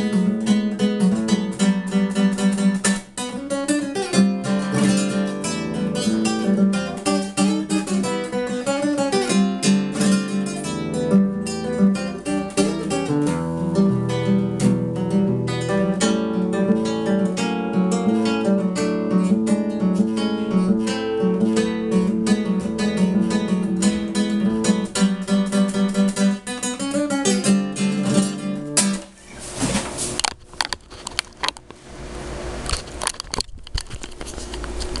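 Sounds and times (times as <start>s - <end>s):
acoustic guitar music: 0.0s - 30.8s
rustling: 28.8s - 31.5s.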